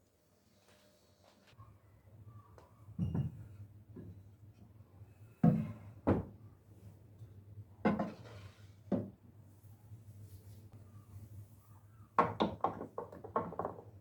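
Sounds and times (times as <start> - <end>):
items knocking on kitchen surface: 12.2 - 13.9.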